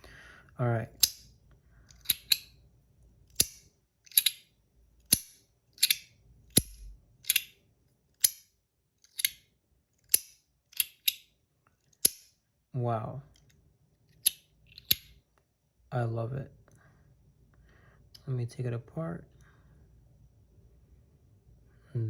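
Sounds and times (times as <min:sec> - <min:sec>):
metal coin sliding: 0:01.9 - 0:02.5, 0:03.4 - 0:04.5, 0:05.1 - 0:07.6, 0:09.0 - 0:09.4.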